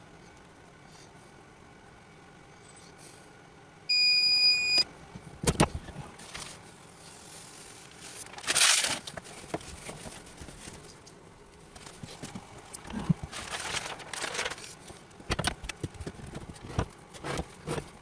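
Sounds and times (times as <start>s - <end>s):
timer beep: 3.9s - 4.8s.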